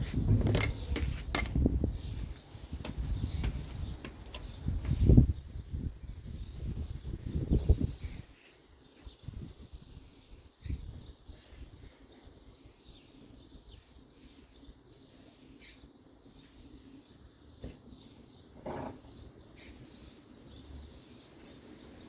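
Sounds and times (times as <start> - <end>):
faint bird chirps: 6.3 - 18.4.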